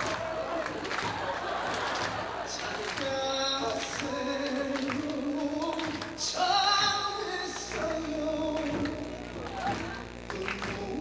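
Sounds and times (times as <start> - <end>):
man singing slowly: 2.5 - 11.0.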